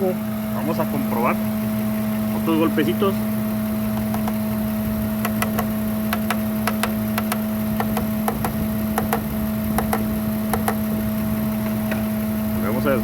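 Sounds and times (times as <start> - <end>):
engine idling with droning tone: 0.0 - 13.0
light taps on valve: 3.9 - 4.4, 5.2 - 10.8.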